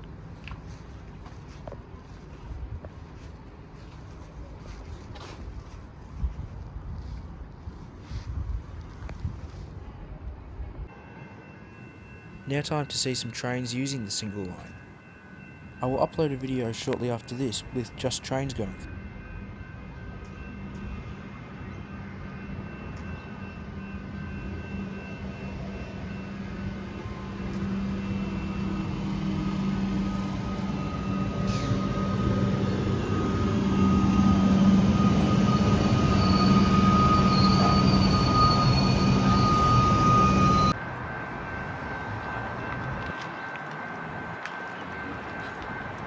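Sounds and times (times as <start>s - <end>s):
electric train on rails: 0.0s - 46.0s
high train whine: 10.9s - 46.0s.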